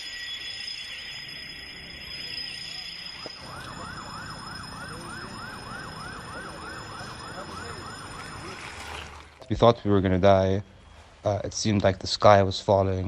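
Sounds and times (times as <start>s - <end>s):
fainter higher siren: 0.0s - 9.3s
siren yelping: 0.0s - 9.3s.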